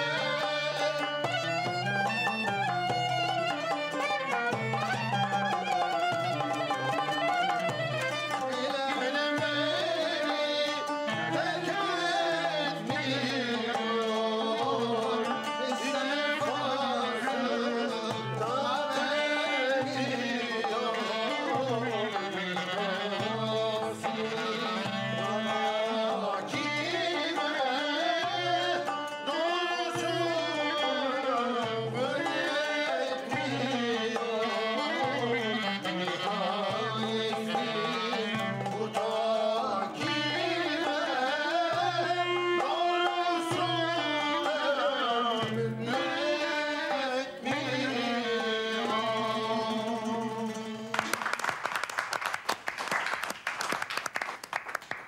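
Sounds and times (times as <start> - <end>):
person singing: 8.0 - 51.2.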